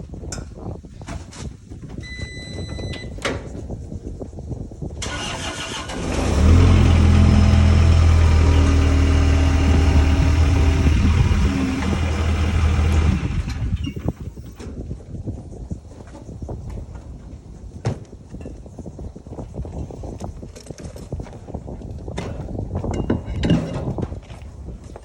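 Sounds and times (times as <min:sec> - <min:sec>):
short electronic beep: 0:02.1 - 0:03.2
diesel engine cranking and running: 0:05.0 - 0:14.2.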